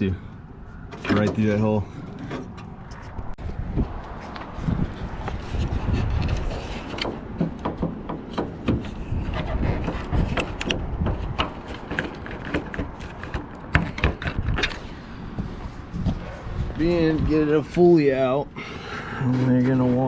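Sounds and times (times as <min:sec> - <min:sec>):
clicks and knocks of metal and plastic: 0:06.2 - 0:14.8.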